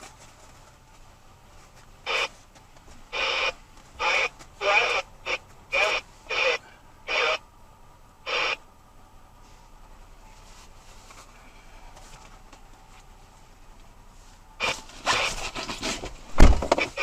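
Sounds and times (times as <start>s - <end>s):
garbled radio voice: 2.1s - 2.3s, 3.1s - 7.5s, 8.2s - 8.6s, 14.6s - 15.6s, 16.7s - 17.0s.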